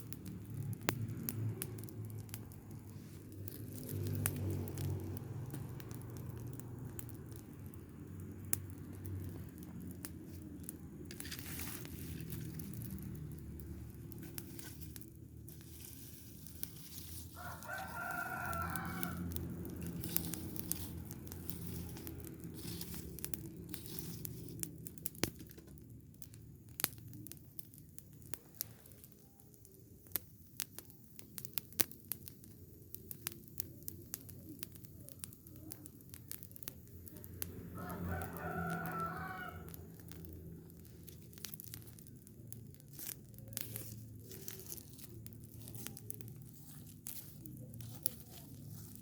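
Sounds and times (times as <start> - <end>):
steady low rumble: 0.0 - 31.2, 39.6 - 49.0
fire popping and crackling: 0.0 - 49.0
rooster crowing: 17.3 - 19.4, 37.7 - 39.8.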